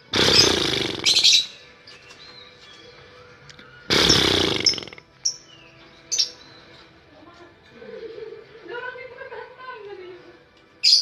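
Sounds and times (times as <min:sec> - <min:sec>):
lovebird harsh rattling chatter: 0:00.1 - 0:01.6, 0:03.9 - 0:05.4.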